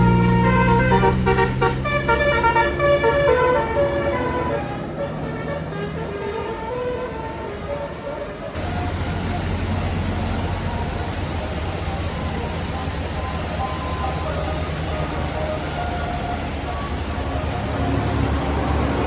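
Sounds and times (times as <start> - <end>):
bus engine hum: 0.0 - 19.0
bus musical horn tune: 0.0 - 19.0.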